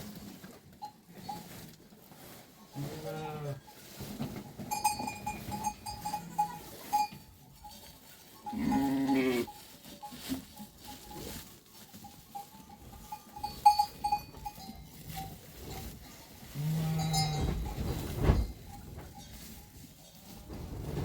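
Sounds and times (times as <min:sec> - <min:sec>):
animal bells clinking: 0:00.0 - 0:20.5
animal bleat: 0:02.7 - 0:03.7, 0:08.5 - 0:09.5, 0:16.6 - 0:17.6.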